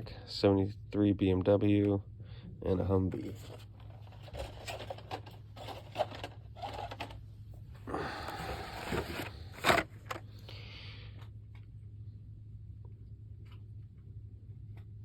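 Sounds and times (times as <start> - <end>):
low steady hum: 0.0 - 15.0
rustling and scraping: 3.1 - 10.4.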